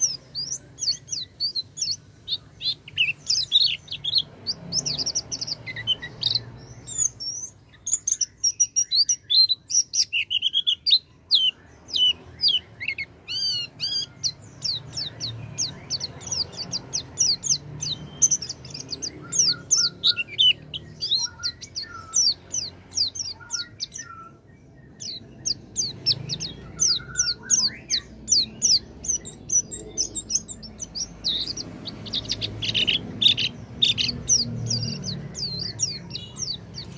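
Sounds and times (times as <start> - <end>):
high twittering bird chirps: 0.0 - 36.9
lower whistled bird notes: 2.6 - 36.9.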